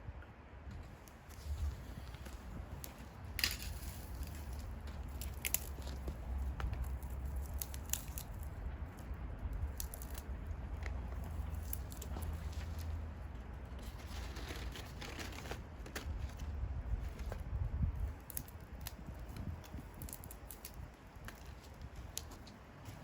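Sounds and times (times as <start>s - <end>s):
steady low rumble: 0.0s - 23.0s
bonfire crackling: 1.3s - 15.9s
fire pops and snaps: 2.2s - 12.3s.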